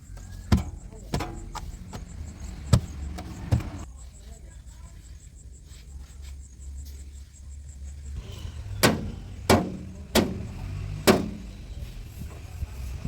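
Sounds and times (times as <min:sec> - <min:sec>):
heavy diesel engine running: 0:00.0 - 0:03.9, 0:07.6 - 0:13.0
sharp loud knocks: 0:00.5 - 0:03.8, 0:08.8 - 0:11.5.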